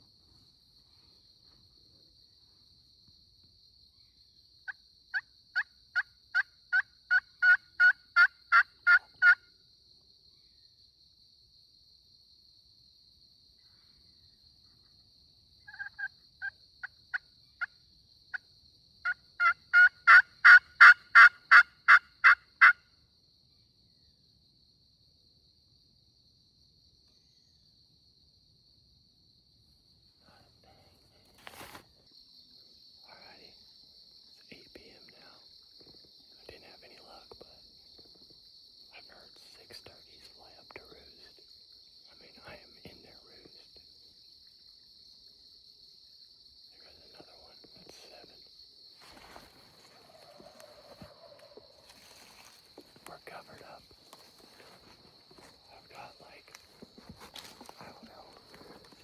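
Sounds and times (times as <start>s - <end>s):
turkey pot call hen yelps: 5.1s - 9.4s, 15.7s - 17.2s, 19.0s - 22.8s.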